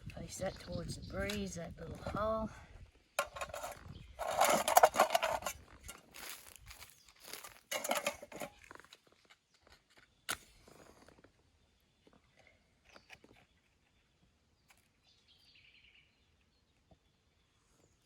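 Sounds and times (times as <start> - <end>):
sticks leaves and paper rustling: 6.0 - 7.8.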